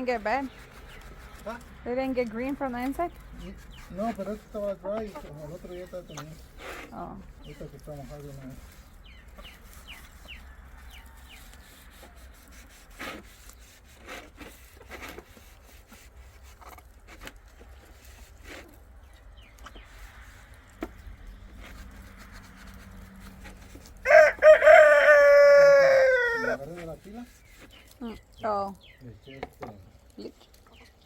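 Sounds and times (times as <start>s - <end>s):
rooster crowing: 10.4s - 11.6s, 24.0s - 26.6s.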